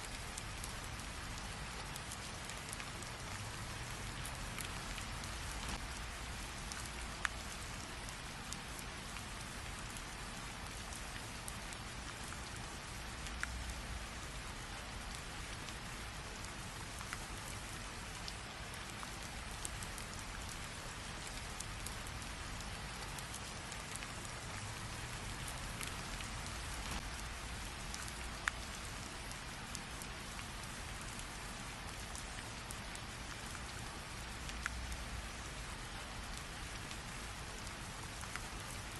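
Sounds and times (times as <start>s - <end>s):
steady rain: 0.0s - 38.9s
single raindrops: 22.1s - 30.6s.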